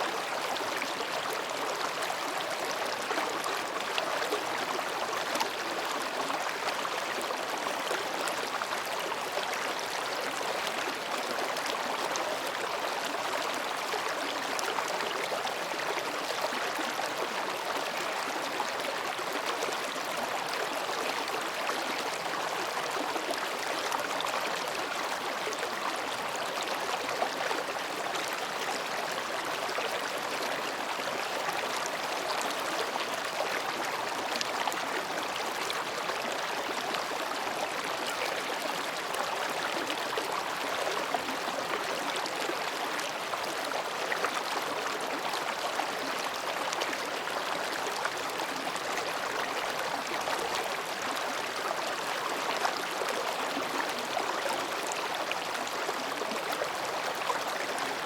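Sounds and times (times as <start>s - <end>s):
stream babbling over rocks: 0.0s - 58.0s.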